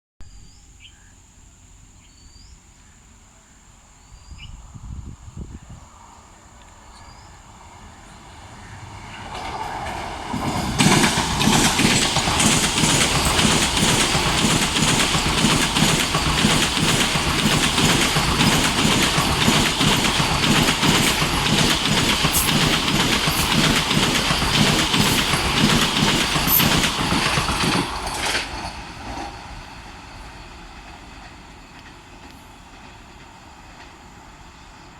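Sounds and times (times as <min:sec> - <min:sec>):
electric train passing at speed: 0:04.6 - 0:34.9
wheels clattering over rail joints: 0:09.2 - 0:29.5.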